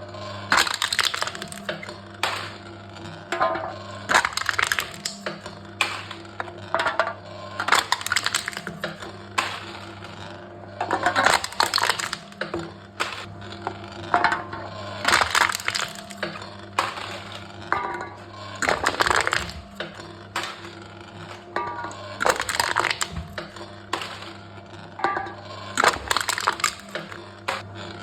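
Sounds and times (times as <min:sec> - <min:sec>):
cans being crushed: 0:00.5 - 0:02.6, 0:04.1 - 0:06.2, 0:07.6 - 0:09.7, 0:11.0 - 0:13.3, 0:15.0 - 0:17.2, 0:18.6 - 0:20.8, 0:22.2 - 0:24.4, 0:25.8 - 0:27.7.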